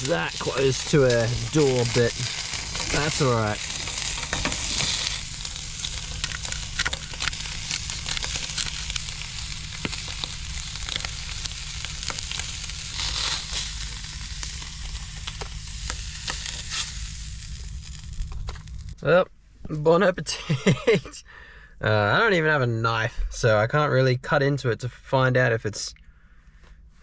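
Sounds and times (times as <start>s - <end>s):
meat sizzling in a pan: 0.0s - 19.0s.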